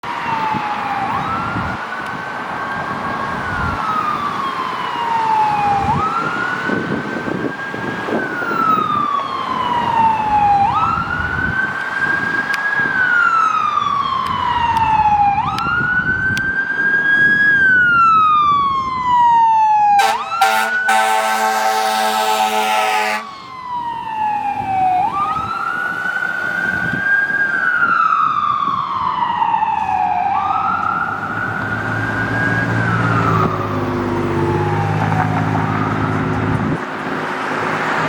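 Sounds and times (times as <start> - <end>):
fire engine siren wailing: 0.0 - 38.0
truck rumble: 20.0 - 38.0.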